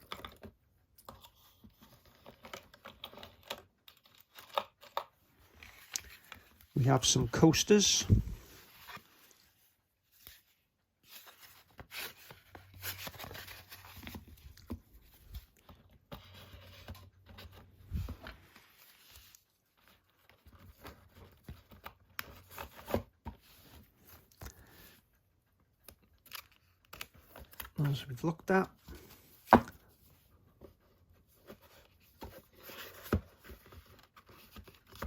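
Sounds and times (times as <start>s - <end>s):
packaging rustling and scraping: 1.1s - 25.0s, 28.7s - 35.0s.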